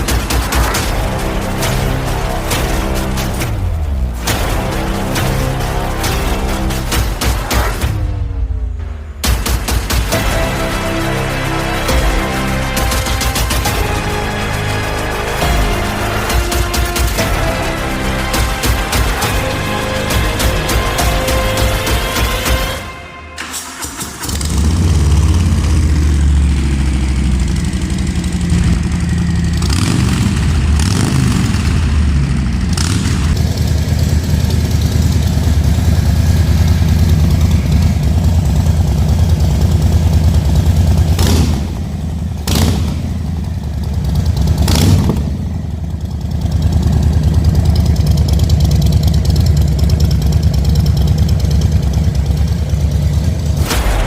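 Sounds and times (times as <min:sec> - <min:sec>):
motorcycle engine starting and idling: 0:20.0 - 0:54.0.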